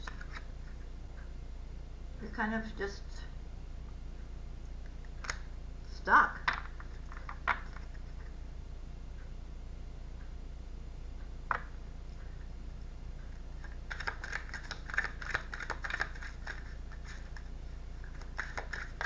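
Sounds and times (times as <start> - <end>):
cards shuffling clicks: 0.0 - 0.5, 13.6 - 17.4, 18.0 - 19.0.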